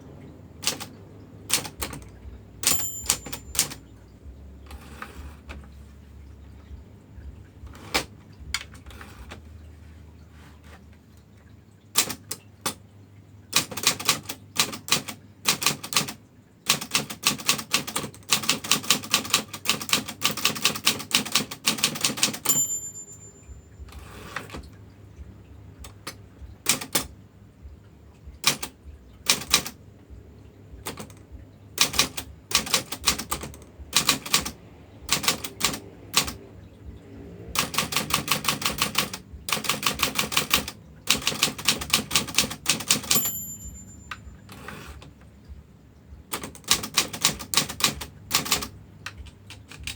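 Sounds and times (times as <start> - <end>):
typewriter keystrokes clacking: 0.6 - 3.9, 7.7 - 9.4, 12.0 - 12.8, 13.5 - 23.0, 25.8 - 27.1, 28.4 - 29.8, 30.8 - 31.2, 31.8 - 36.5, 37.5 - 45.2, 46.3 - 49.9
typewriter margin bell ding: 2.6 - 3.9, 21.9 - 24.6, 42.2 - 45.0.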